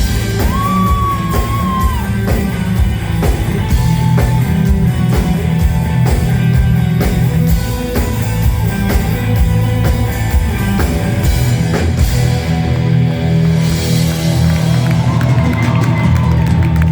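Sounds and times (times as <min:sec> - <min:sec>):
live rock band playing: 0:00.0 - 0:16.9.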